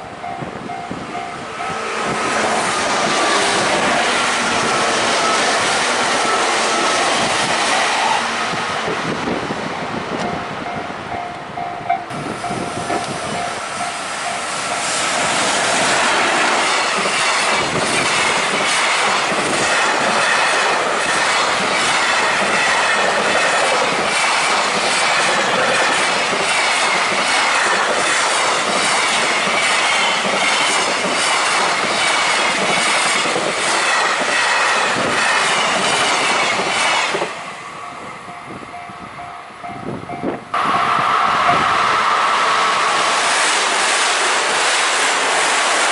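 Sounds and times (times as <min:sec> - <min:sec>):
squealing whine of train: 0:00.0 - 0:45.9
train wheels clattering over rails: 0:12.2 - 0:37.4.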